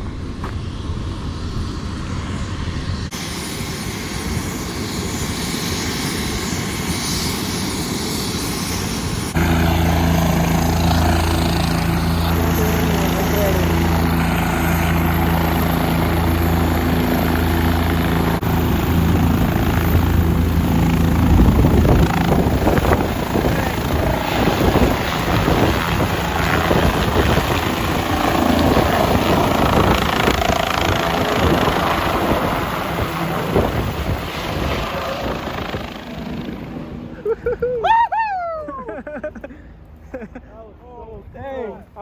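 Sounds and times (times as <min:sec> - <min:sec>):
helicopter rotors: 0:00.0 - 0:42.0
wind on microphone: 0:18.4 - 0:36.0.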